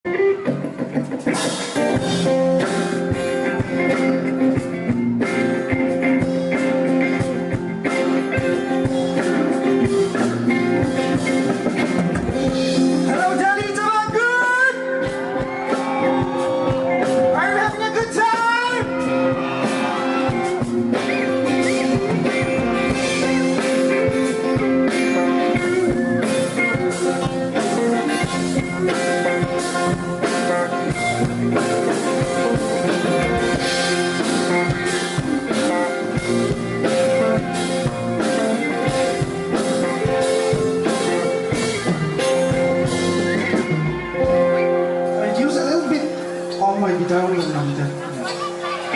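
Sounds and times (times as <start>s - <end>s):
guitar: 0.0s - 48.9s
steady drum beat: 0.5s - 46.0s.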